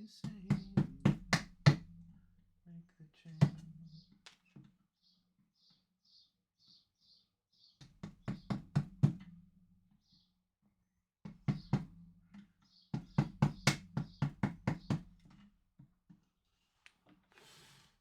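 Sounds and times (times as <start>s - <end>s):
rapid hammer strikes: 12.9s - 15.1s.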